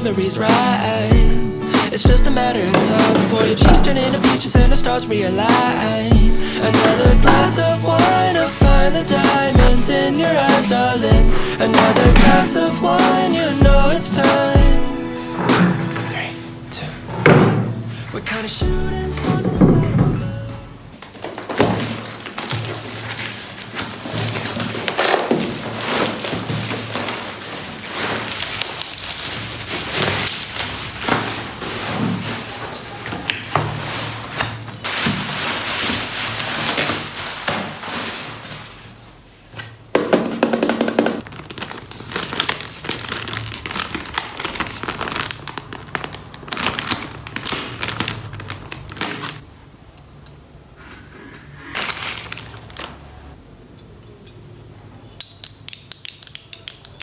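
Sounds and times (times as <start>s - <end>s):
boards knocking: 1.2s - 5.0s, 5.6s - 9.9s, 10.5s - 14.8s, 40.0s - 41.2s
packaging crinkling and rustling: 20.9s - 39.9s, 40.6s - 49.5s, 51.5s - 53.4s.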